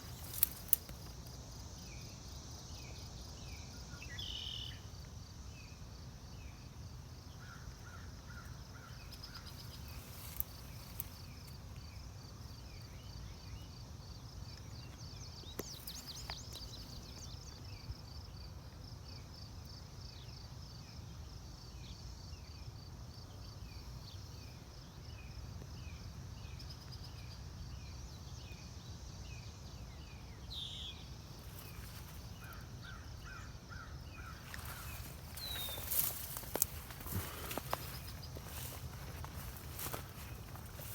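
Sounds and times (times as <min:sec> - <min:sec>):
insects trilling: 0:00.0 - 0:19.5, 0:25.8 - 0:40.9.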